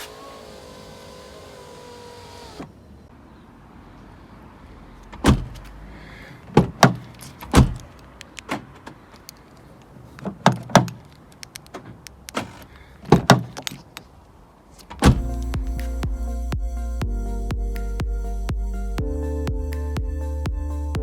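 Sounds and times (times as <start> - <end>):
clunks and knocks on car door: 6.6 - 7.8, 12.4 - 13.6, 15.0 - 15.7.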